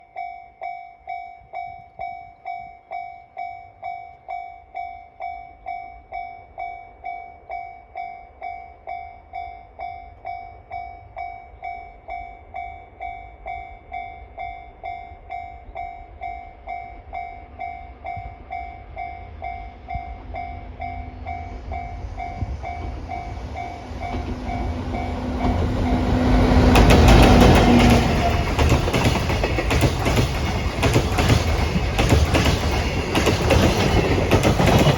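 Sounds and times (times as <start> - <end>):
railway crossing warning bell: 0.0 - 34.9
train rumble and wheel clatter: 12.4 - 34.9.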